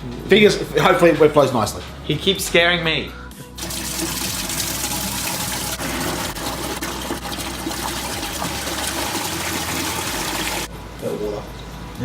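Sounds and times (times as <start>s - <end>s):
water flowing and splashing: 3.6s - 10.7s.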